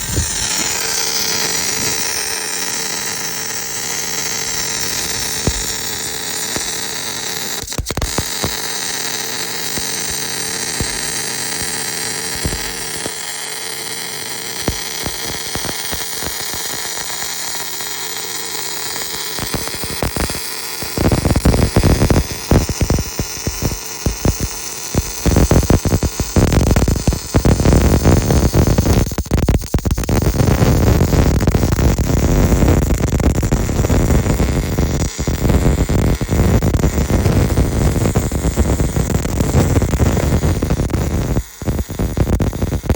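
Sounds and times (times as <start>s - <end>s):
electric machine motor whirring: 0.0s - 8.6s
loud crackling bursts: 0.0s - 42.9s.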